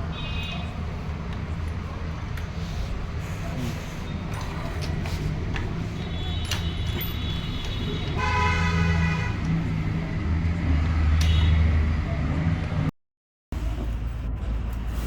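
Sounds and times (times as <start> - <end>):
car horn: 6.0 - 9.5, 11.2 - 11.8.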